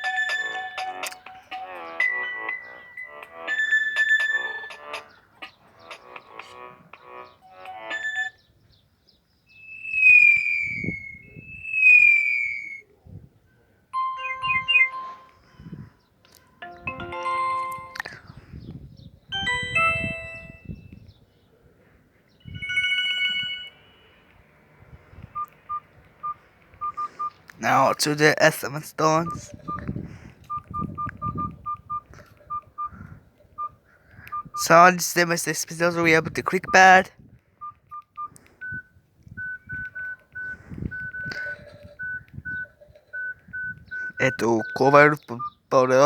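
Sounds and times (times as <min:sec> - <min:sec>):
phone ringtone melody: 0:00.0 - 0:08.4, 0:14.0 - 0:15.8, 0:16.6 - 0:18.2, 0:19.3 - 0:20.9, 0:22.4 - 0:24.4, 0:25.2 - 0:35.0, 0:35.9 - 0:46.0
short beeps: 0:14.0 - 0:15.4, 0:25.4 - 0:29.9, 0:30.5 - 0:33.0, 0:33.6 - 0:34.9, 0:36.0 - 0:45.6.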